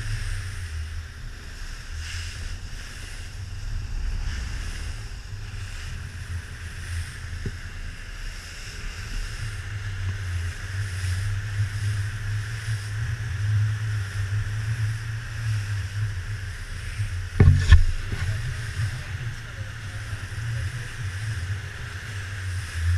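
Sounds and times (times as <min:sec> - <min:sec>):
boat engine rumbling: 0:00.0 - 0:22.9
wind buffeting microphone: 0:00.0 - 0:22.9
water rushing: 0:16.8 - 0:21.0
sharp loud thump: 0:17.4 - 0:18.4.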